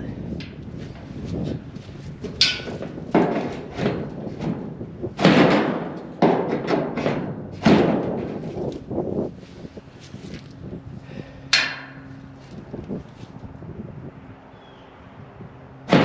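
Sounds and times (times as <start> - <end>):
heavy thumps and knocks: 2.2 - 8.9.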